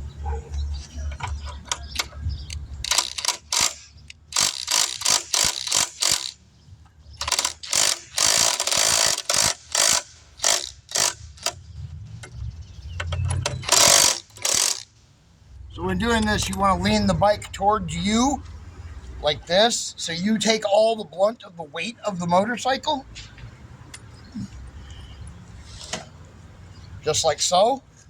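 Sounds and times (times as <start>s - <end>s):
ratchet clicking: 2.0s - 6.4s, 7.2s - 11.6s, 13.1s - 14.9s.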